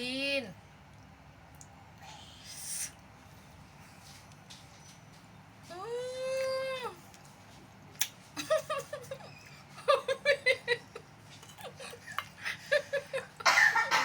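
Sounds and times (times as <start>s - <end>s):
woman laughing: 8.4s - 14.0s.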